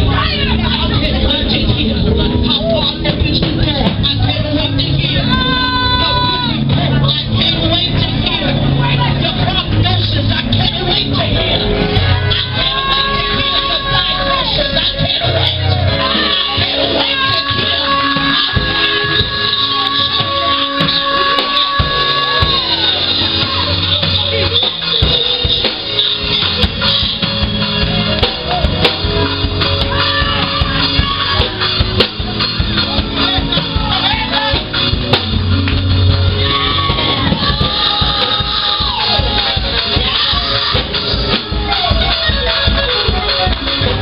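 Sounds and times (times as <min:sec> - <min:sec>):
band with drum kit: 0:00.0 - 0:44.0
people singing and shouting: 0:00.0 - 0:44.0.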